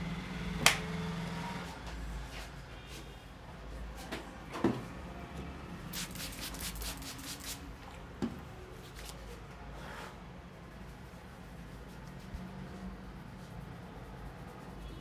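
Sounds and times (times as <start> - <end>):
rubbing strokes over hair: 6.0 - 7.6, 10.8 - 15.0.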